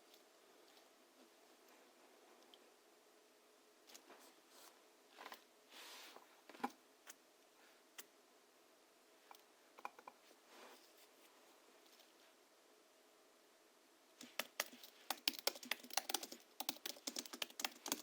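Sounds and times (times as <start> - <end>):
soft rustling: 10.2 - 12.4.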